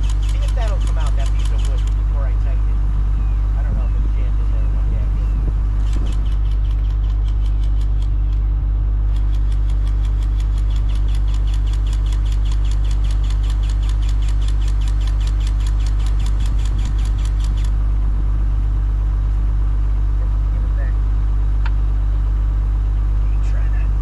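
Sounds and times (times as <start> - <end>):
rapid even clicking: 0.0 - 2.0, 5.8 - 8.5, 9.1 - 17.8
excavator diesel engine running: 0.0 - 24.0.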